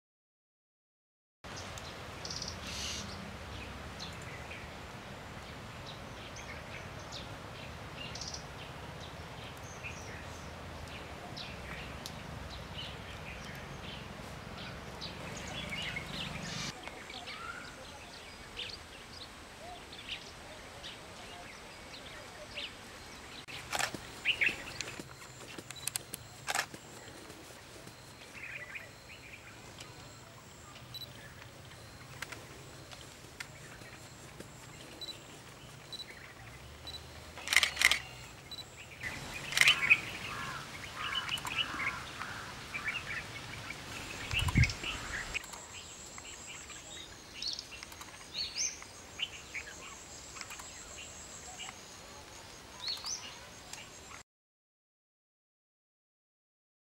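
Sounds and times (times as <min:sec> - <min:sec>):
birds chirping and calling: 0:01.5 - 0:04.7, 0:05.4 - 0:54.2
sharp clicks: 0:36.8 - 0:38.6, 0:39.4 - 0:39.9, 0:47.7 - 0:48.9, 0:50.4 - 0:50.8.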